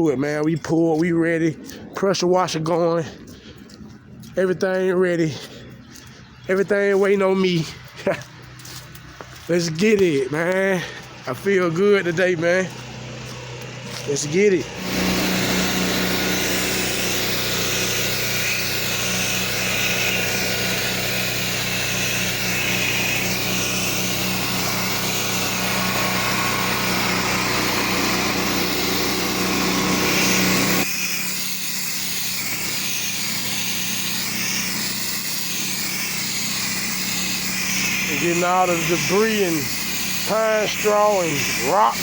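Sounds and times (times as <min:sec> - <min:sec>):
low machine hum: 0:07.8 - 0:42.0
pressure washer spray hissing: 0:13.9 - 0:42.0.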